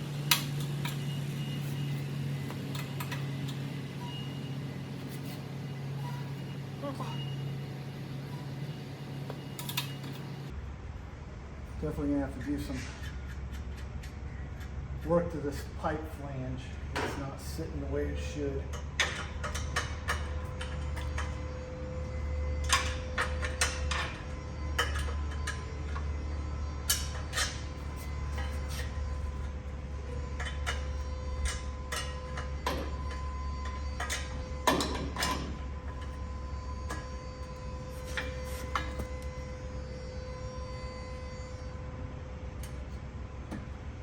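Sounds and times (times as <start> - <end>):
steady low hum: 0.0 - 44.0
metal tools clinking and clanking: 0.2 - 4.3, 22.5 - 26.1, 26.8 - 39.5.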